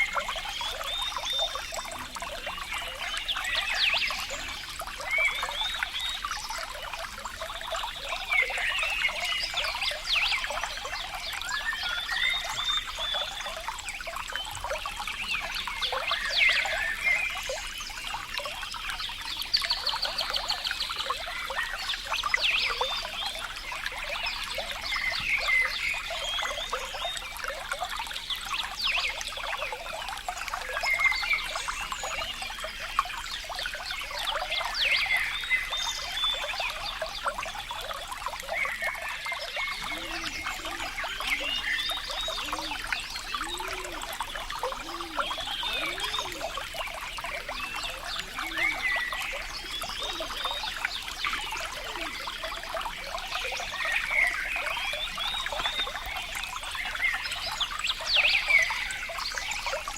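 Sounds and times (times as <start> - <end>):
high chirping gurgles: 0.0 - 59.9
water trickling and gurgling: 0.0 - 59.9.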